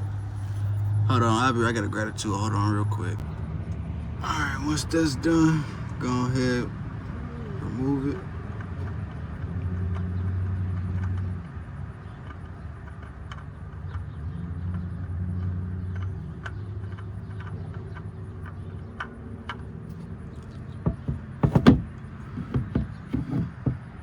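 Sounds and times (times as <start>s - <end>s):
light clicks and taps: 8.3s - 21.6s.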